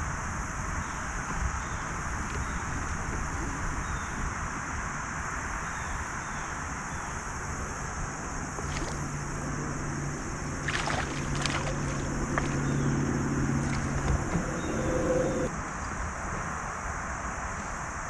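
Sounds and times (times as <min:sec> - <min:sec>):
wind noise on microphone: 0:00.0 - 0:17.4
low steady hum: 0:07.4 - 0:15.7.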